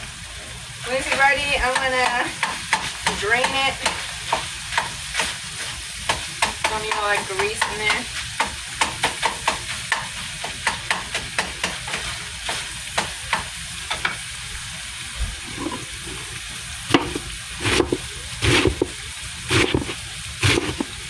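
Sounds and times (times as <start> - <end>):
meat sizzling in a frying pan: 0.0 - 21.0
utensil scraping a pan: 15.4 - 21.0.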